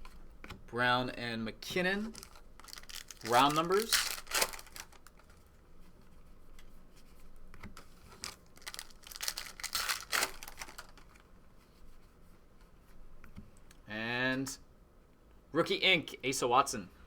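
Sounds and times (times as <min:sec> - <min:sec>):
trading cards flipped by hand: 0:07.6 - 0:11.2.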